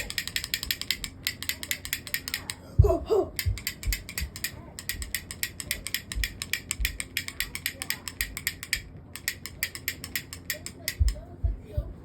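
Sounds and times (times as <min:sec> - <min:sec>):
ratchet-like mechanical clicking: 0:00.0 - 0:02.6, 0:03.4 - 0:11.2
dull low thumps: 0:02.8 - 0:03.6, 0:11.0 - 0:12.0.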